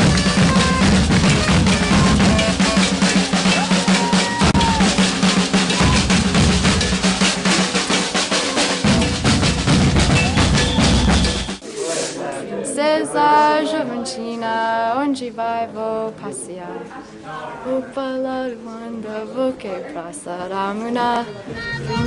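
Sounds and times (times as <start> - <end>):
percussion ensemble playing: 0.0 - 12.2.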